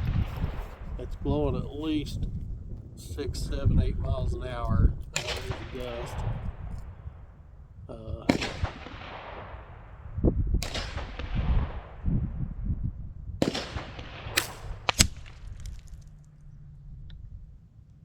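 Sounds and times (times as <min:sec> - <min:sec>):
wind rumbling on microphone: 0:00.0 - 0:18.0
gunshots with echoes: 0:05.2 - 0:07.4, 0:08.0 - 0:12.2, 0:13.4 - 0:15.6.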